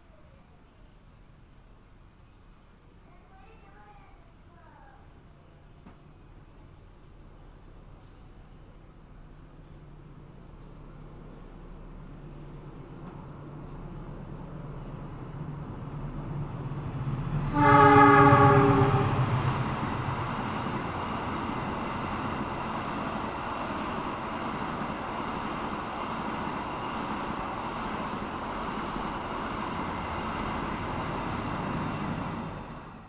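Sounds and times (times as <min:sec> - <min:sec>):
locomotive engine rumble: 0:06.4 - 0:33.0
train wheel noise: 0:06.7 - 0:33.0
train horn blast: 0:17.4 - 0:19.5.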